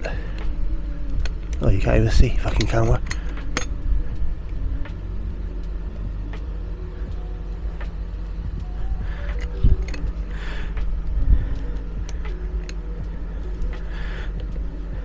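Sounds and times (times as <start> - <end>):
steady low rumble: 0.0 - 15.0
spanner metallic clicks: 2.2 - 3.7.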